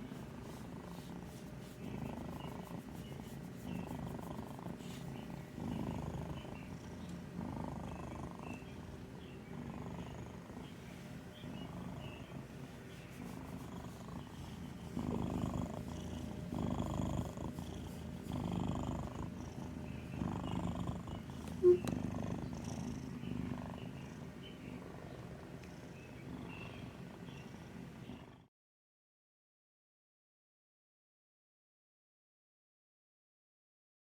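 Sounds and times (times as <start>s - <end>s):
cat snoring: 5.6s - 8.6s, 9.5s - 10.6s, 13.3s - 28.5s.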